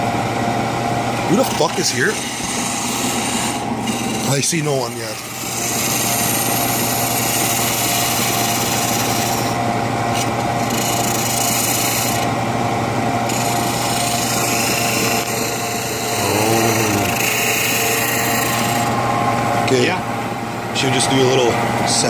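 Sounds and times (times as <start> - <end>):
lathe motor hum: 0.0 - 21.8
tool scraping spinning wood: 1.3 - 12.4, 13.2 - 19.0.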